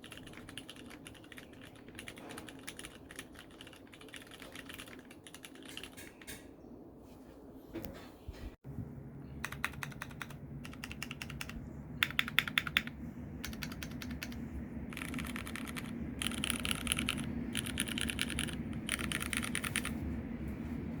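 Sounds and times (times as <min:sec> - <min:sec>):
mechanical keyboard typing: 0:00.0 - 0:06.4, 0:09.4 - 0:20.0
low hum: 0:08.3 - 0:21.0.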